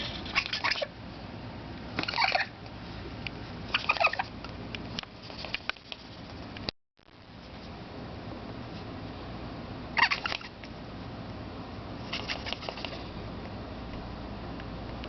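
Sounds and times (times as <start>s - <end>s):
rat making rapid clicks: 0.0s - 0.9s, 3.8s - 4.3s, 5.0s - 6.6s, 10.0s - 10.8s, 12.0s - 13.1s.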